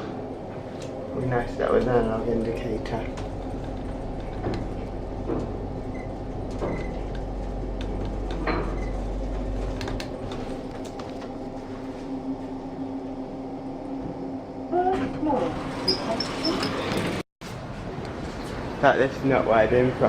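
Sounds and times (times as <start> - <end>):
passenger lift humming: 0.0 - 17.2
sliding doors: 15.0 - 18.8.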